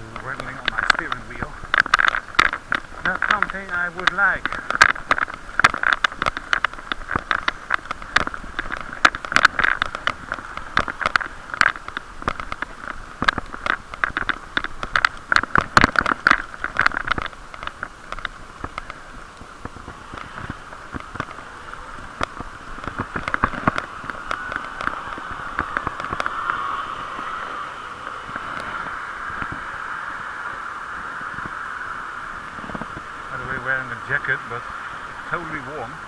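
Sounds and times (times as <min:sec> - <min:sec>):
riding noise hiss: 0:00.0 - 0:36.0.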